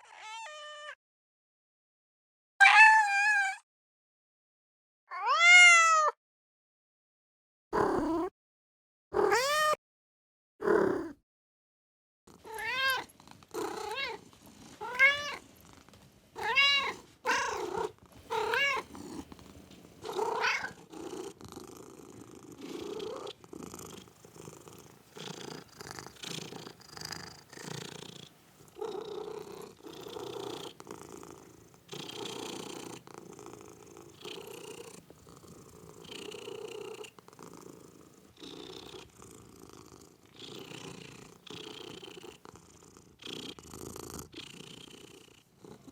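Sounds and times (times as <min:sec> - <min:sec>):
cat meowing: 0:00.0 - 0:01.0, 0:02.6 - 0:03.6, 0:05.1 - 0:06.2, 0:09.2 - 0:09.8, 0:12.4 - 0:13.1, 0:13.7 - 0:14.2, 0:14.8 - 0:15.4, 0:16.4 - 0:18.9, 0:20.1 - 0:20.8
cat purring: 0:07.8 - 0:08.3, 0:12.3 - 0:45.9.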